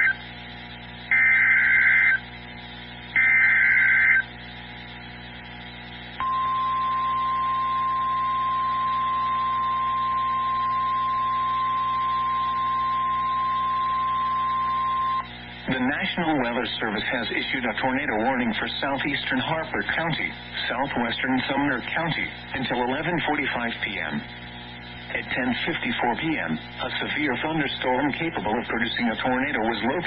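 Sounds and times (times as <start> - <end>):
two-tone data warble: 0.0 - 5.0, 6.2 - 15.8
steady warning alarm tone: 1.1 - 2.2, 3.2 - 4.3, 6.2 - 15.3.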